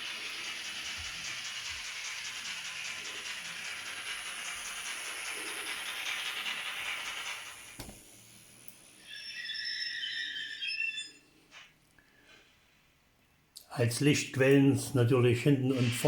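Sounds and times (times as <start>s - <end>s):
steam locomotive hiss and chuffing: 0.0s - 13.2s, 13.8s - 16.0s
steam whistle blasts: 9.0s - 11.1s.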